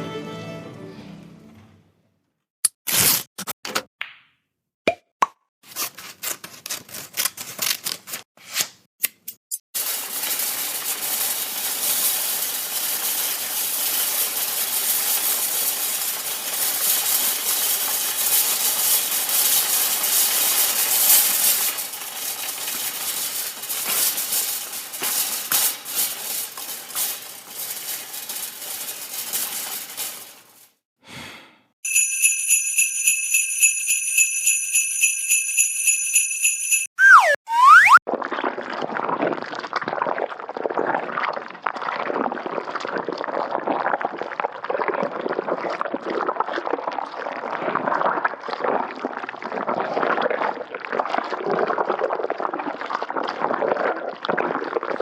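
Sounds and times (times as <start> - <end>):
jingling bell clatter: 31.9 - 37.0.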